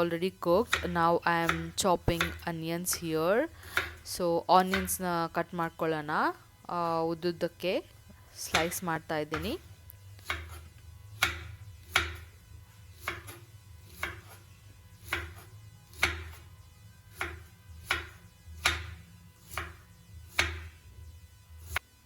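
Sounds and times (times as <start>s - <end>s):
knife slicing onion on board: 0.6s - 5.0s, 8.5s - 9.6s, 10.2s - 12.3s, 12.9s - 16.5s, 17.1s - 20.8s.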